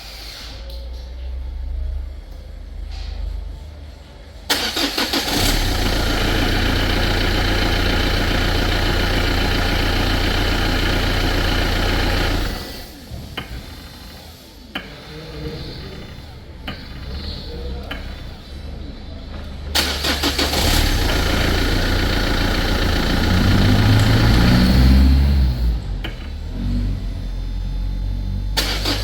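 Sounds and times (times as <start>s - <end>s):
car engine starting and idling: 2.8s - 29.0s
ignition clicks: 4.5s - 6.1s, 19.8s - 21.9s, 28.6s - 29.0s.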